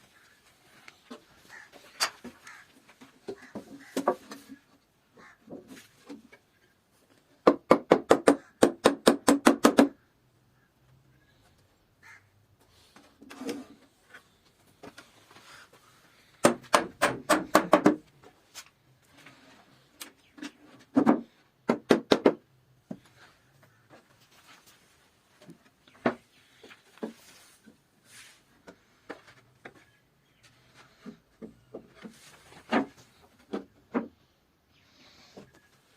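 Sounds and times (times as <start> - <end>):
hand tools knocking on wood: 7.4 - 10.0, 16.4 - 18.0.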